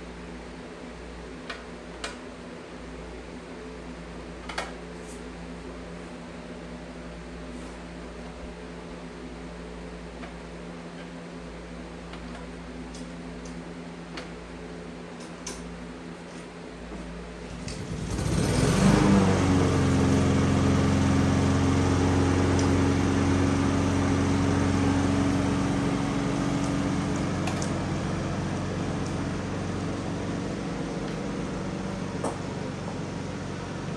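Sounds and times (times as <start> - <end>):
motor starting up and running: 17.4 - 33.9.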